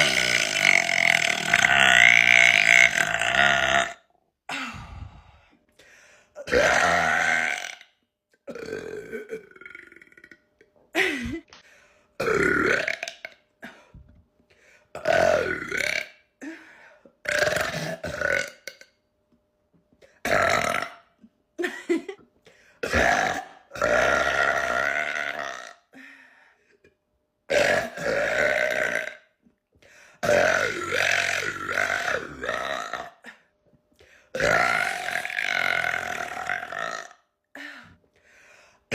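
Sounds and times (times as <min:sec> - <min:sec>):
woman burping loudly: 0:00.0 - 0:04.8, 0:06.4 - 0:11.5, 0:12.2 - 0:13.4, 0:15.0 - 0:16.2, 0:17.2 - 0:19.0, 0:20.2 - 0:22.2, 0:22.8 - 0:25.9, 0:27.5 - 0:29.4, 0:30.2 - 0:33.5, 0:34.4 - 0:38.0.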